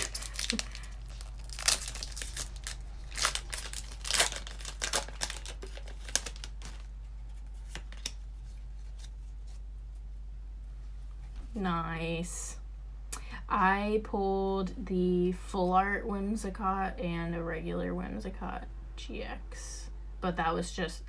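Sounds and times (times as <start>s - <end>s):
foil wrapper crinkling and tearing: 0.0s - 8.2s.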